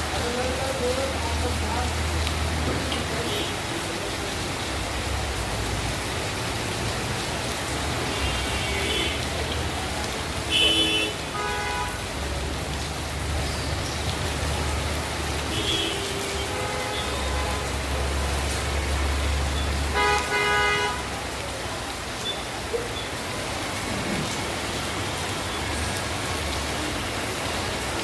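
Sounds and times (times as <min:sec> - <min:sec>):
rain on the road: 0:00.0 - 0:28.0.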